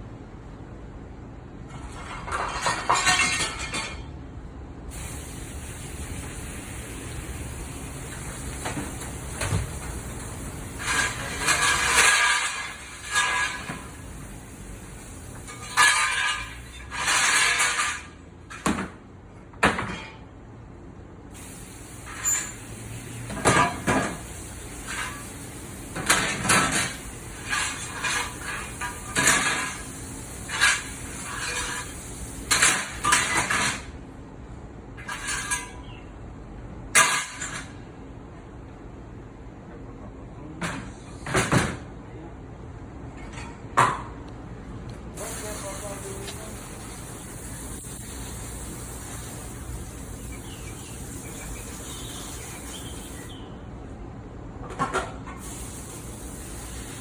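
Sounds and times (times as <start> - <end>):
dishes clattering in metal sink: 2.0 - 4.1, 10.8 - 14.0, 15.5 - 18.0, 26.0 - 29.8.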